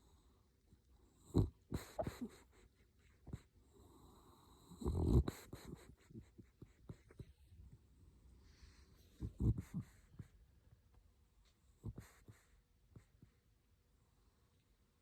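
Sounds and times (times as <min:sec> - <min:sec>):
soft breath noises: 0:00.0 - 0:14.8
pet snoring: 0:01.1 - 0:02.5, 0:03.7 - 0:06.3, 0:09.1 - 0:10.2.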